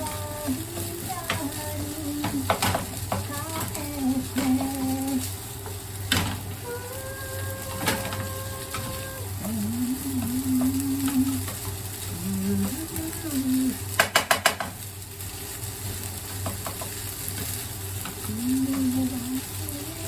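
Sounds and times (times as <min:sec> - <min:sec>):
spatula stirring rice in pan: 0:00.0 - 0:06.7, 0:07.5 - 0:19.8
pan sizzling softly: 0:00.0 - 0:20.0
sharp taps on pan: 0:02.2 - 0:03.7, 0:14.0 - 0:14.8, 0:16.4 - 0:17.0.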